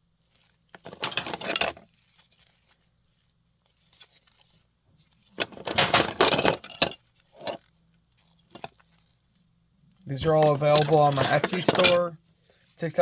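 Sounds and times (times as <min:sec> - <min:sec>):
wooden ornaments clattering: 0:00.8 - 0:01.8, 0:05.4 - 0:07.7, 0:10.1 - 0:12.1.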